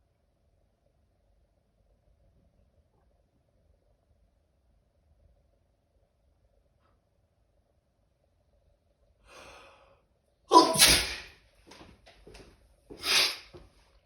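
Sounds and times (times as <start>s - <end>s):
person sneezing: 10.5s - 11.3s, 13.0s - 13.5s.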